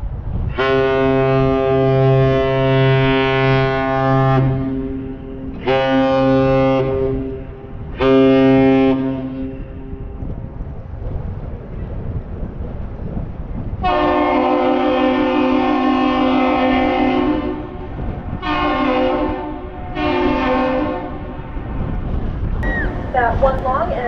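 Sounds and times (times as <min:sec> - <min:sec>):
deep ship's whistle blasts: 0:00.5 - 0:09.9, 0:13.8 - 0:21.6, 0:22.6 - 0:23.7.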